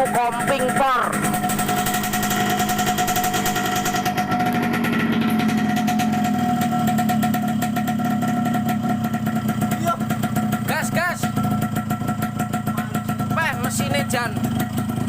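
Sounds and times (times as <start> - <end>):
two-stroke engine idling: 0.0 - 15.0.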